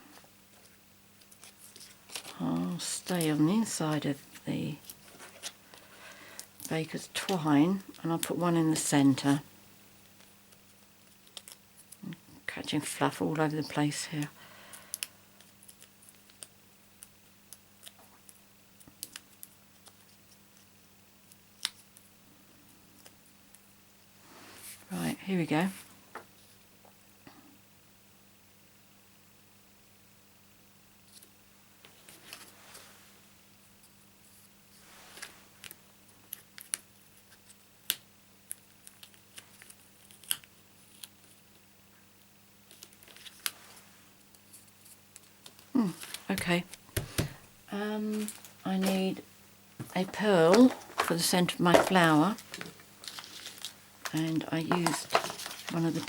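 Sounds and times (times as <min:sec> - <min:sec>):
low electrical hum: 0:00.0 - 0:56.0
clicks and taps handling paper: 0:35.2 - 0:41.6, 0:42.7 - 0:43.6, 0:44.8 - 0:47.4, 0:49.8 - 0:56.0.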